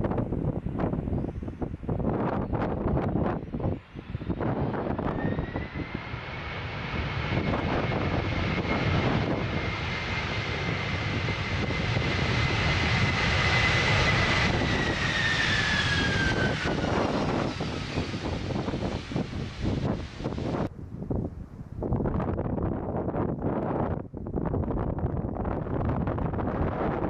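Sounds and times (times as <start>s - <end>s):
wind buffeting microphone: 0.0s - 27.0s
jet airliner passing overhead: 0.1s - 20.7s.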